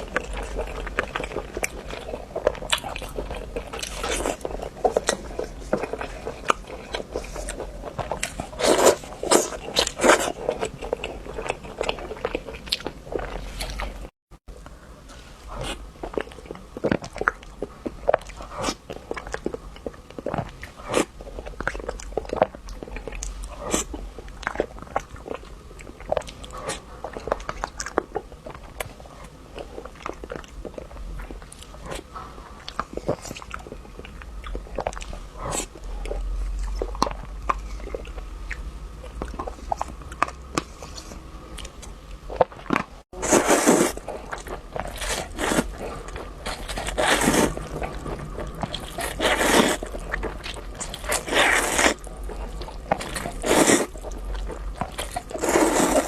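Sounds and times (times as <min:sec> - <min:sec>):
person biting and chewing: 0:00.0 - 0:14.1, 0:29.6 - 0:56.0
sharp crunches: 0:42.3 - 0:52.0.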